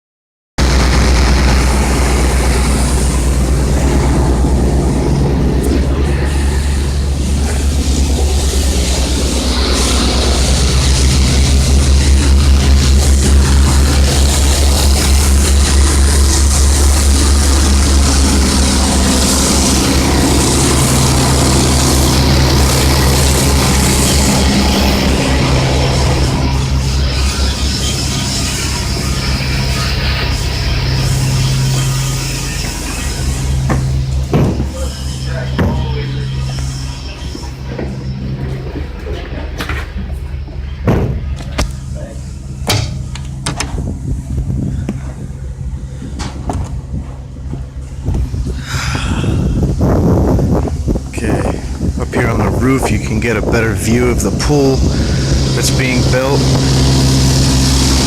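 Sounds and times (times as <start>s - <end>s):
engine running with hiss: 0.6s - 58.0s
steady machine hum: 0.6s - 58.0s
sharp knocks and bangs: 33.6s - 36.1s, 40.8s - 41.8s, 42.6s - 43.9s.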